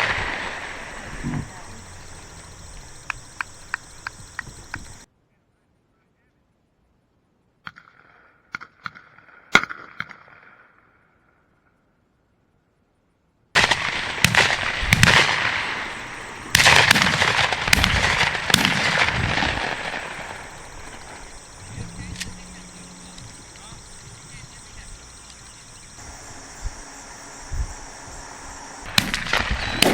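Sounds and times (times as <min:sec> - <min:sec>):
shotgun shots: 0:00.0 - 0:02.5, 0:13.6 - 0:23.8, 0:26.0 - 0:29.9
faint sharp clicks: 0:02.2 - 0:05.1, 0:22.0 - 0:22.5, 0:25.2 - 0:25.4.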